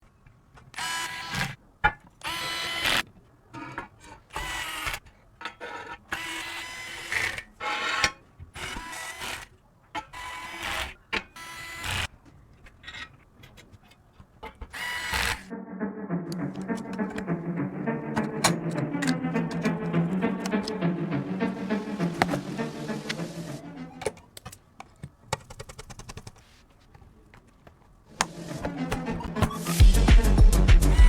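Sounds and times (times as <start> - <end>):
electric screwdriver whirring: 0.8 - 1.6, 2.2 - 3.0, 4.3 - 5.0, 8.6 - 9.5, 14.7 - 15.5
low bowed string music: 15.5 - 24.2, 28.2 - 31.0.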